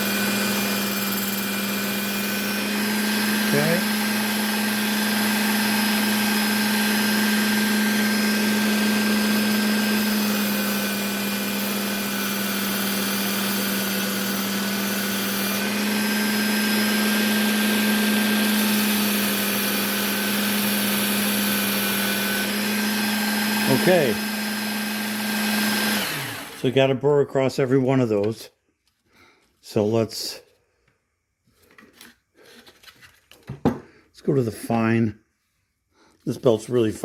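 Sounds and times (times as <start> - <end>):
belt sharpener motor hum: 0.0 - 26.7.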